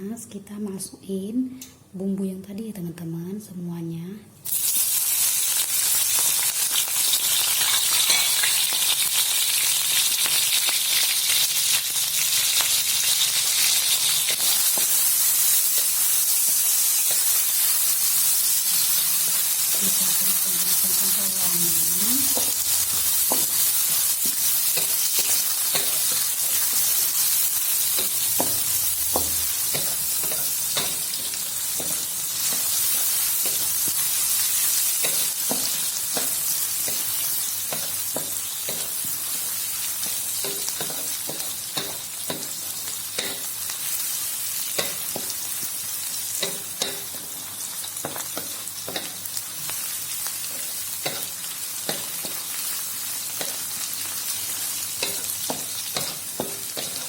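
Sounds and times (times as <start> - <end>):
vegetables sizzling in hot oil: 4.4 - 57.0
utensil tapping and scraping pan: 27.9 - 33.8, 40.0 - 42.6, 43.2 - 43.5, 55.0 - 57.0.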